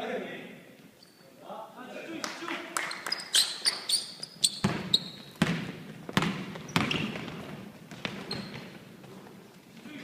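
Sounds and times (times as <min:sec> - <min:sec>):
sneakers squeaking on court: 0:01.0 - 0:01.3, 0:02.9 - 0:09.8
basketball bouncing: 0:04.4 - 0:09.4.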